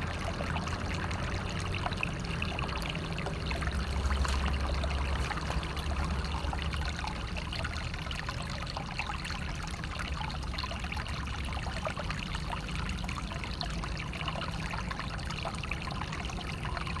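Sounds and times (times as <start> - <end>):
water flowing and trickling: 0.0 - 17.0
small splashes: 1.0 - 7.4.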